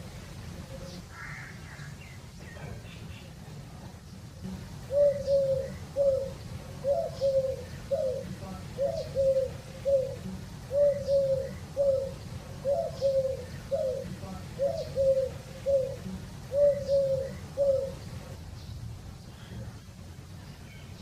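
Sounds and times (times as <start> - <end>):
dove cooing: 4.4 - 18.4.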